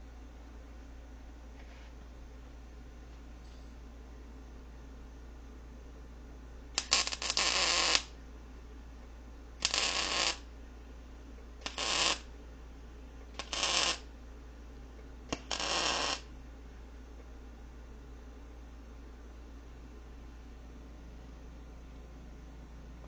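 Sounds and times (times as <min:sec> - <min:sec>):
welding arc crackling: 0:06.8 - 0:08.1, 0:09.6 - 0:10.5, 0:11.6 - 0:12.3, 0:13.4 - 0:14.1, 0:15.3 - 0:16.3.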